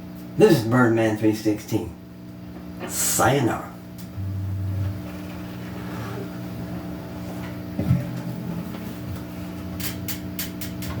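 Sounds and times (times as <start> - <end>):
guitar amplifier hum: 0.0 - 11.0
low thump: 7.8 - 9.3.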